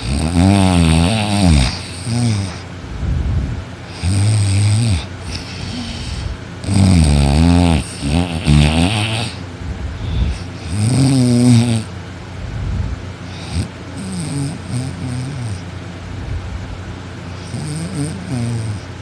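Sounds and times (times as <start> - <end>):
person snoring loudly: 0.0 - 2.7, 3.9 - 9.4, 10.0 - 11.9, 13.3 - 15.6, 17.3 - 18.9
quiet breaths: 0.0 - 11.9.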